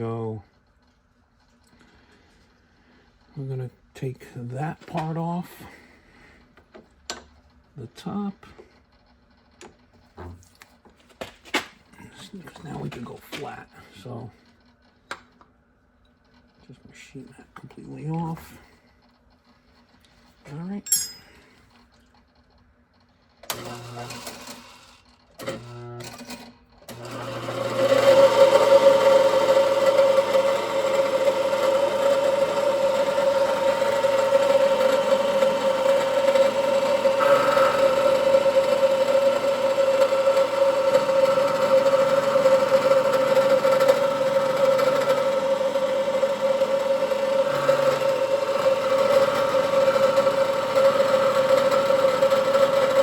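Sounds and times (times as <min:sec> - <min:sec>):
machine tool motor whining: 0:12.0 - 0:53.0.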